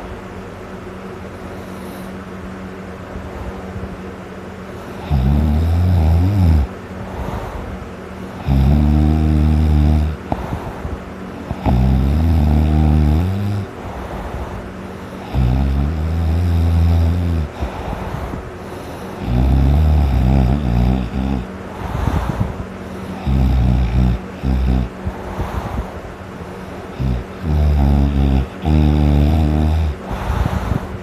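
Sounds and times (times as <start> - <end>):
quiet breathing: 1.3 - 31.0
loud rattling snoring: 4.8 - 31.0.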